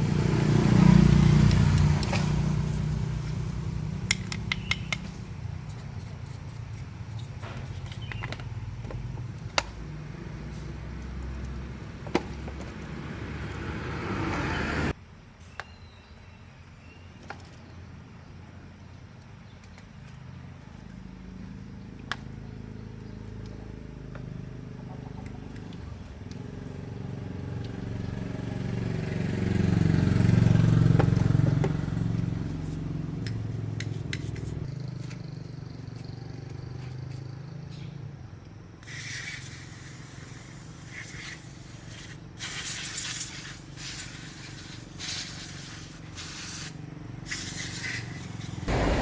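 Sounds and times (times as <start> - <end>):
vehicle engine rumbling: 0.0 - 38.8, 44.1 - 49.0
sharp clicks and knocks: 4.1 - 5.2.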